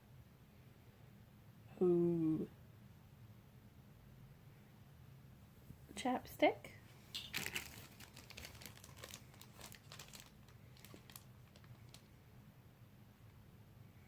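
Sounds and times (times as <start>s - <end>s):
packaging crinkling and rustling: 7.1s - 12.1s.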